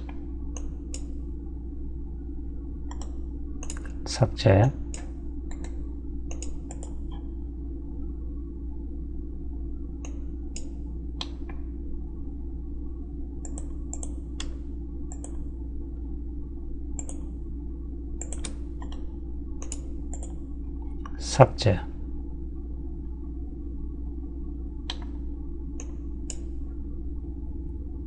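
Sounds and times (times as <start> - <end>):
low electrical hum: 0.0 - 28.0
mouse and keyboard clicks: 2.9 - 3.9.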